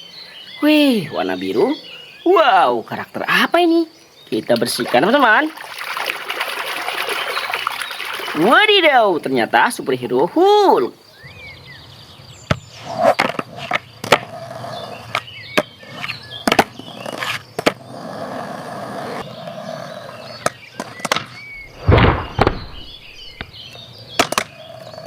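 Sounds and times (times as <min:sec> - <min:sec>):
burst of noise: 0:21.6 - 0:23.4.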